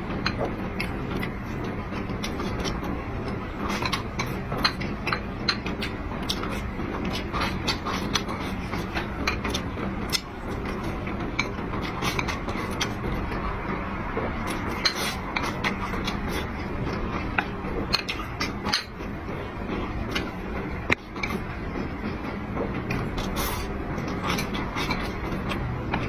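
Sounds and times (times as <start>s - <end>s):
steady background hum: 0.0s - 26.0s
utensils against dishes: 0.0s - 26.0s
chewing clicks and smacks: 0.2s - 13.3s, 14.5s - 16.6s.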